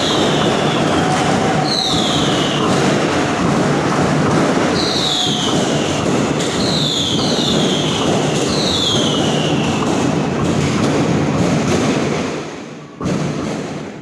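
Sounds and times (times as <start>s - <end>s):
falling firework whistles: 0.0s - 11.1s
fireworks crackling and popping: 0.0s - 14.0s.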